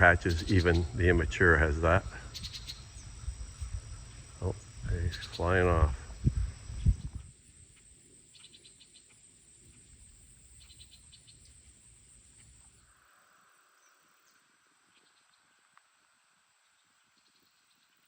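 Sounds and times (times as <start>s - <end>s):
rapid chirping pulses: 0.0s - 9.0s
crickets trilling: 0.0s - 18.0s.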